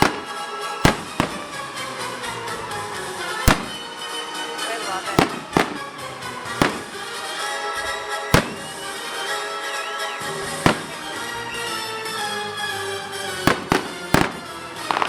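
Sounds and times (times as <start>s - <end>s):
fireworks bursting: 0.0s - 15.0s
music playing: 0.0s - 15.0s.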